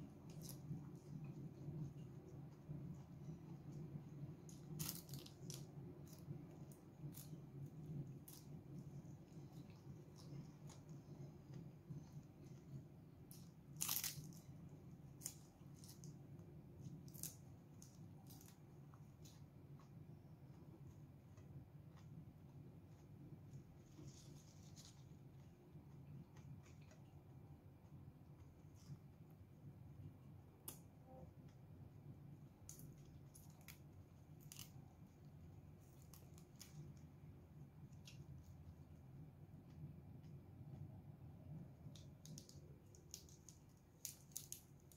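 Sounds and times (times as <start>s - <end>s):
chewing crisp leafy greens: 0.0s - 29.2s
faint steady hum: 0.0s - 44.9s
crunching leafy greens: 4.4s - 11.2s, 13.3s - 16.2s, 16.8s - 19.4s, 41.9s - 44.9s.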